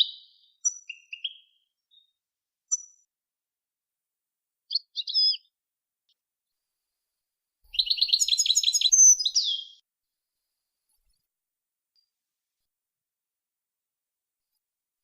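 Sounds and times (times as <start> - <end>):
songbird singing: 0.0 - 3.0, 4.7 - 6.2, 7.7 - 9.8.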